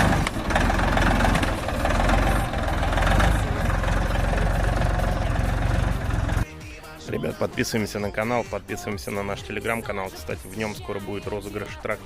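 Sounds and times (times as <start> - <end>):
tractor diesel engine idling: 0.0 - 6.5.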